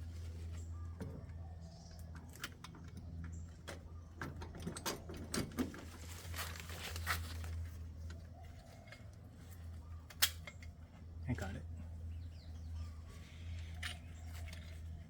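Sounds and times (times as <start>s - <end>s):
steady low hum: 5.9s - 15.0s.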